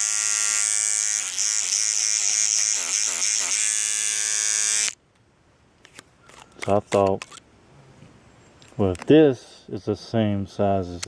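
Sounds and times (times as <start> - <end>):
electric toothbrush buzzing: 0.0 - 5.0.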